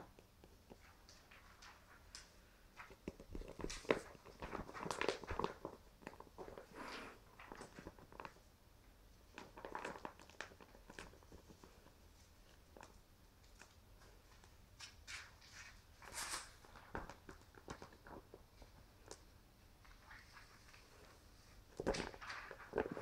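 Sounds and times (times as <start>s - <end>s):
bag rustling and crinkling: 19.9s - 23.0s.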